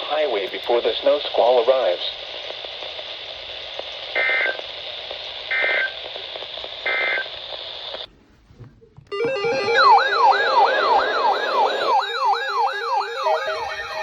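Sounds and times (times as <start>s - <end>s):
radio hiss: 0.0s - 8.1s, 10.4s - 14.0s
warbling data bursts: 9.2s - 14.0s.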